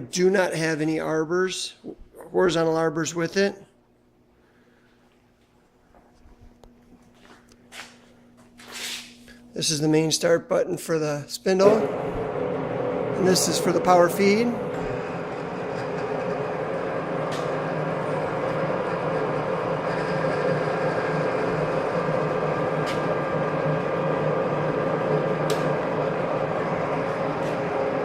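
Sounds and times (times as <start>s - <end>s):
milling machine humming: 11.6s - 28.0s.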